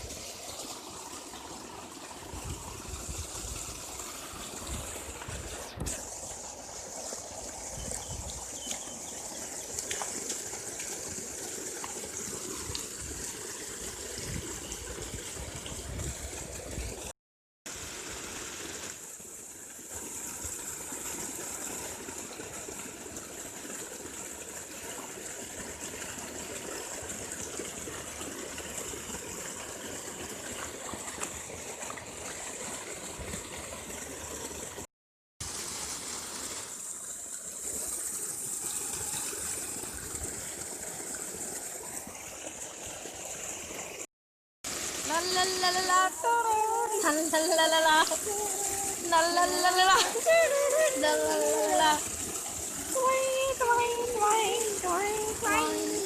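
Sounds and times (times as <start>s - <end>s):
water gushing and splashing: 0.0s - 56.0s.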